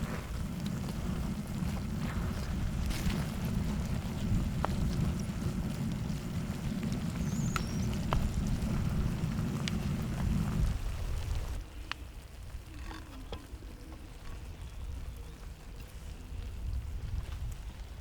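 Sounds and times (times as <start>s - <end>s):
steady low rumble: 0.0s - 11.6s.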